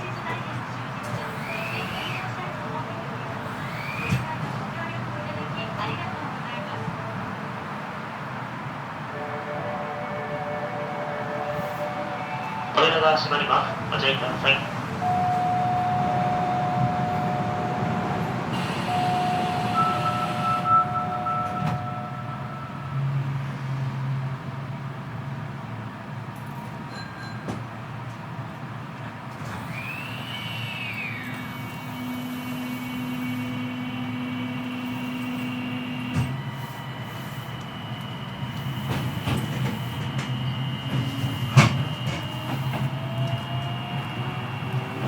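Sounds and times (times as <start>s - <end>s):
electric train inverter tones: 9.1s - 23.8s, 29.5s - 45.0s
train motor whine gliding: 14.8s - 23.1s, 29.4s - 45.0s.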